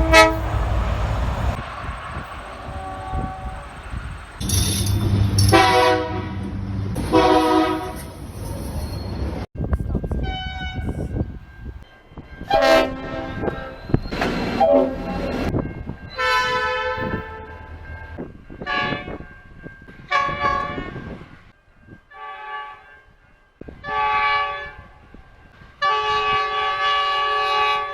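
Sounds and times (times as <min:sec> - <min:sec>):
train horn blasts: 0:00.0 - 0:00.9, 0:02.6 - 0:04.0, 0:05.2 - 0:08.2, 0:10.2 - 0:11.1, 0:12.4 - 0:14.0, 0:14.6 - 0:15.4, 0:16.2 - 0:17.7, 0:20.1 - 0:21.1, 0:22.1 - 0:23.0, 0:23.8 - 0:24.9, 0:25.8 - 0:27.9.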